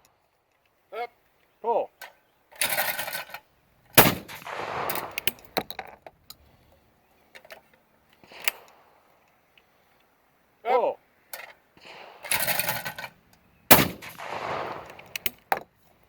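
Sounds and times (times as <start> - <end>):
shotgun shot: 4.0 - 5.6, 11.8 - 12.8, 13.7 - 15.3.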